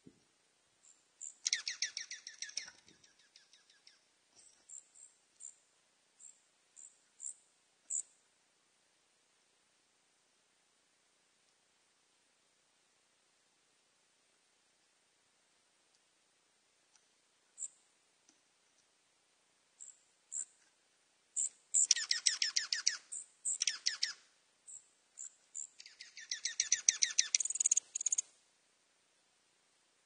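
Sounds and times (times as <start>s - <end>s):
bird rapid trilling: 25.8s - 28.2s.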